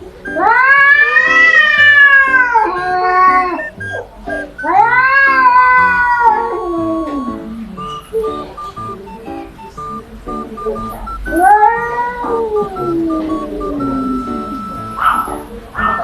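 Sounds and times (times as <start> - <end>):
light plucked music: 0.0 - 15.9
cats yowling: 0.3 - 7.6, 11.1 - 16.0.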